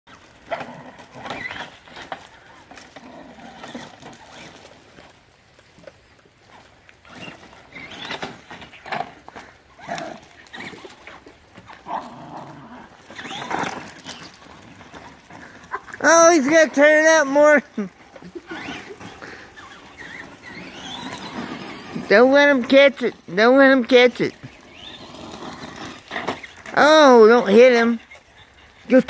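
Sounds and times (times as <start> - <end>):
dog whining and yelping: 15.2 - 16.2, 28.0 - 29.0.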